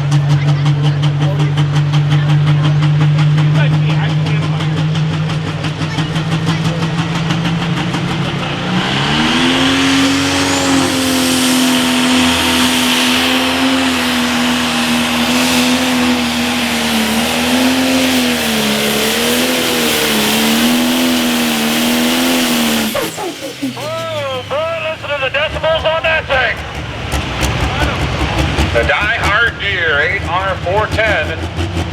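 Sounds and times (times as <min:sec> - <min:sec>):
diesel tractor engine under load: 0:00.0 - 0:31.9.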